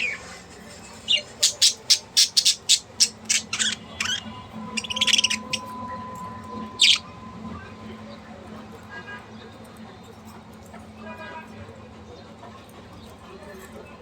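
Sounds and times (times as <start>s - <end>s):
bird chirps: 1.0s - 5.8s, 6.7s - 7.1s.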